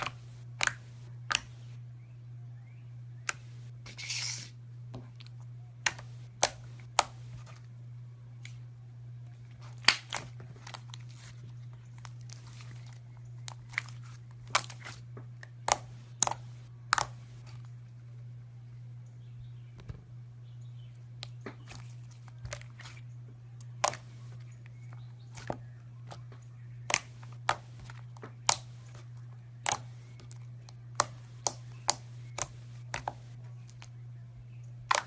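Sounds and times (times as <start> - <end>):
steady low hum: 0.0 - 35.0
crinkling rustle: 9.5 - 15.1.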